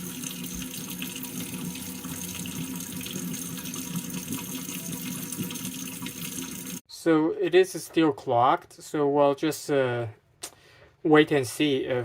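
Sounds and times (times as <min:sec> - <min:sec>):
faucet running into sink: 0:00.0 - 0:06.8.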